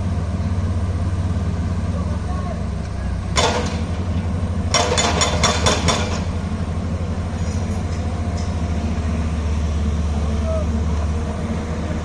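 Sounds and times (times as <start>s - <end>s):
excavator diesel engine running: 0.0s - 12.0s
sharp knocks: 4.7s - 6.3s.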